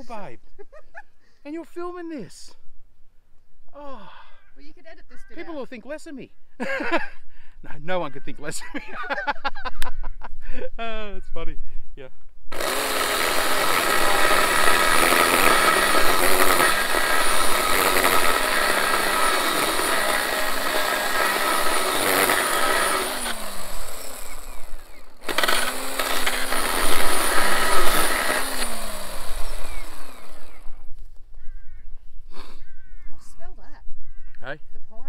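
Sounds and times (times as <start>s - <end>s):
electric chainsaw cutting wood: 12.5s - 30.9s.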